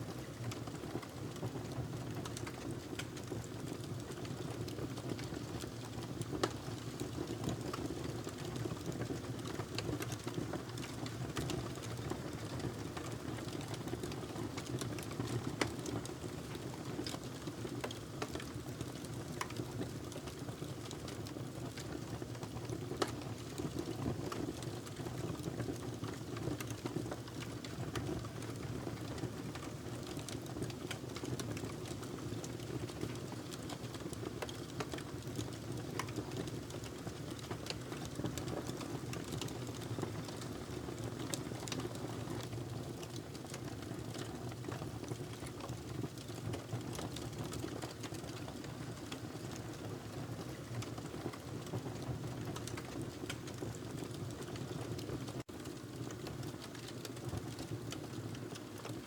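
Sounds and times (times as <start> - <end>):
fire crackling and popping: 5.1 - 49.8, 50.5 - 59.0.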